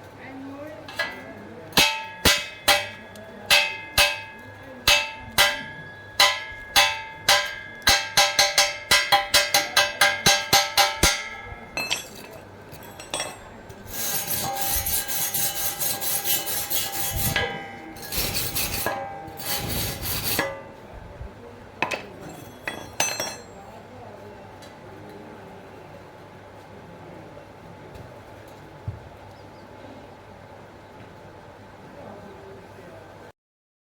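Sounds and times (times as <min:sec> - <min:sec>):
hammer striking steel pipe: 0:01.7 - 0:20.8, 0:21.8 - 0:23.6
rough scraping on metal: 0:10.3 - 0:20.7.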